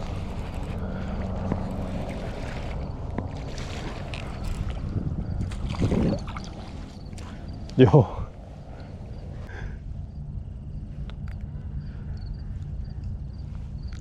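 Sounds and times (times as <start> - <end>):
wind buffeting microphone: 0.0 - 9.4
boat engine running: 0.0 - 14.0.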